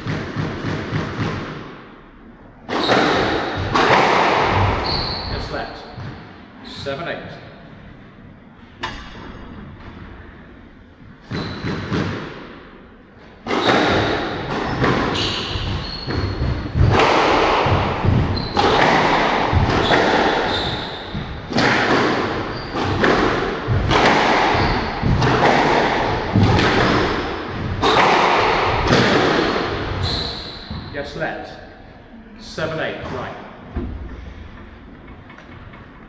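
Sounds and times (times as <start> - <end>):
squash ball hits echoing: 0.0 - 6.4, 8.8 - 31.8.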